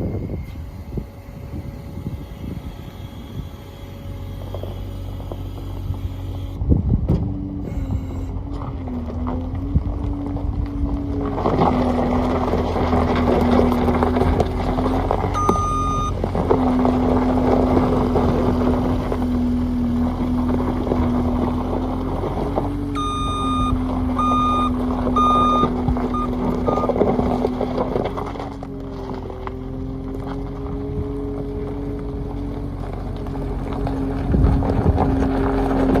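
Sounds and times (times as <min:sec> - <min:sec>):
diesel engine running: 0:00.0 - 0:36.0
backup alarm beeps: 0:15.4 - 0:16.2, 0:23.0 - 0:27.0.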